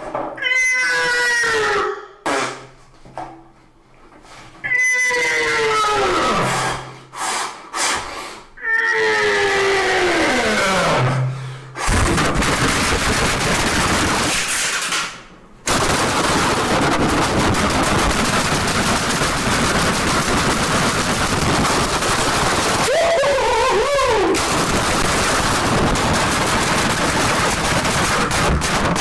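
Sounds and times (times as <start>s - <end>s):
rapid-fire bangs: 11.8s - 29.0s.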